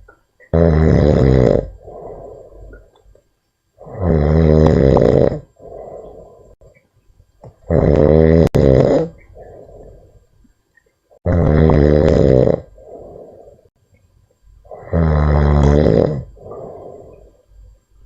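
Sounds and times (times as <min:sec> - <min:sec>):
loud rasping snores: 0:00.5 - 0:02.4, 0:03.8 - 0:06.2, 0:07.6 - 0:09.9, 0:11.2 - 0:13.6, 0:14.7 - 0:17.1.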